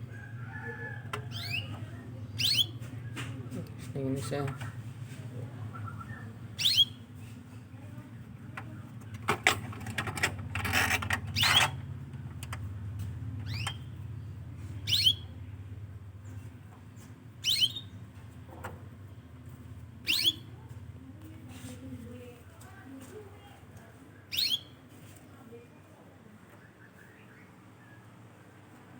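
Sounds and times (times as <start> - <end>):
canary chirping: 0.1 - 3.1, 5.6 - 7.2, 11.3 - 11.9, 13.4 - 15.5, 17.4 - 18.0, 20.0 - 20.7, 24.3 - 24.8.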